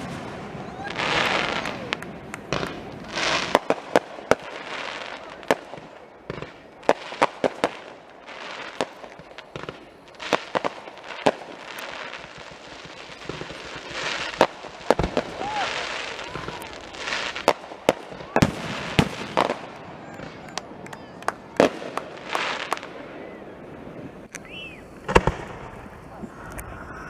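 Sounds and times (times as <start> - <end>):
firework crackling hiss: 0.0 - 20.8, 21.4 - 27.0
firework shells bursting: 0.0 - 23.0.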